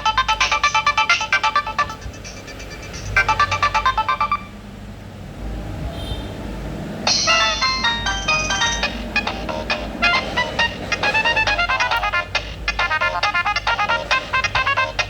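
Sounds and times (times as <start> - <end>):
phone ringtone from loudspeaker: 0.0 - 4.6, 7.1 - 15.0
quick high electronic notes: 7.0 - 13.2.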